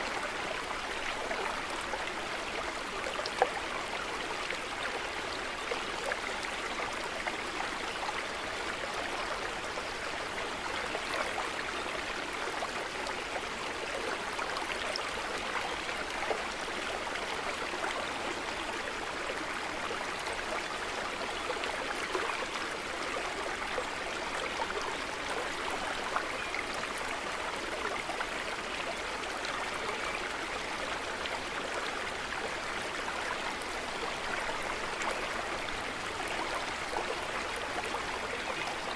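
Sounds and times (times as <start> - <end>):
stream babbling: 0.0 - 38.9.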